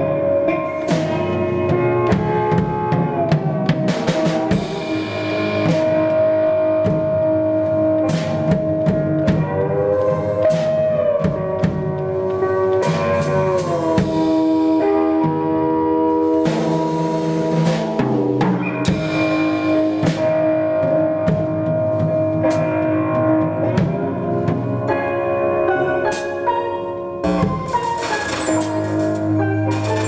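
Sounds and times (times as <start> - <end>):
drum kit beat with cymbals: 0.0 - 30.0.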